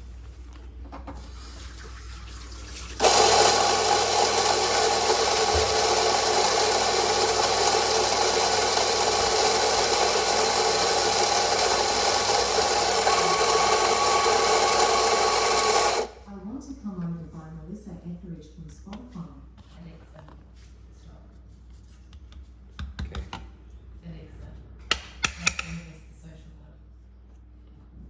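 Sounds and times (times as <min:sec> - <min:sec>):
electric coffee grinder grinding: 0:03.0 - 0:16.2.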